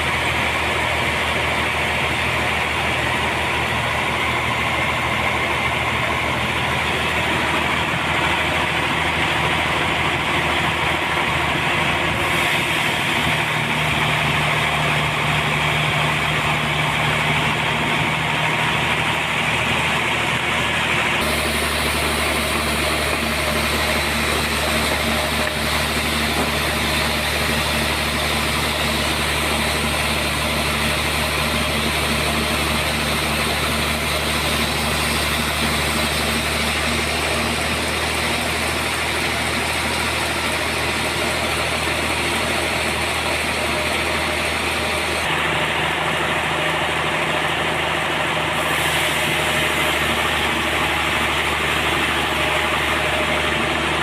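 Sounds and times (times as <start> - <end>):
sawmill machine hum: 0.0 - 54.0
saw cutting wood hiss: 12.1 - 18.7, 21.2 - 46.0, 48.4 - 54.0.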